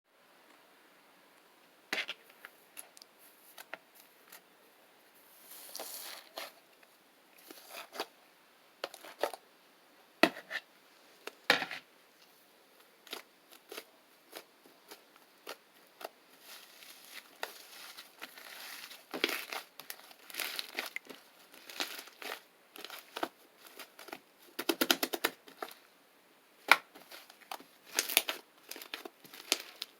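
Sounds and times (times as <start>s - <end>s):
slime crackling and popping: 13.0s - 25.8s, 26.6s - 29.9s.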